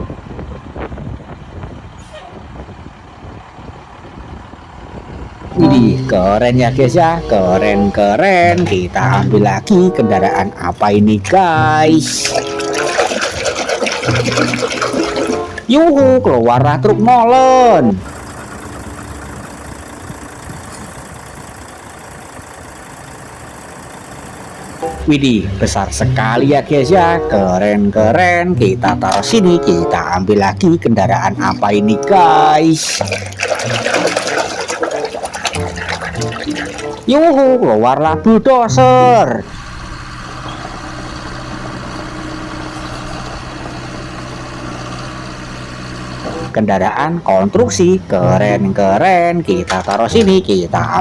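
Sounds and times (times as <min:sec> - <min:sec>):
engine idling with low rumble: 0:00.0 - 0:12.2, 0:15.6 - 0:29.1, 0:37.2 - 0:49.4.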